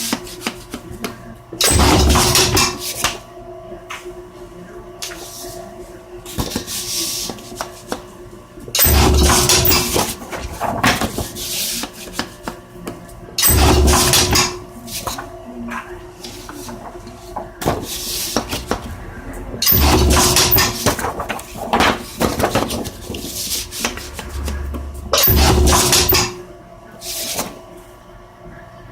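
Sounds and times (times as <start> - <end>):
paper cutting machine clattering: 8.8 - 12.6, 19.7 - 23.9
low machine rumble: 16.8 - 26.9.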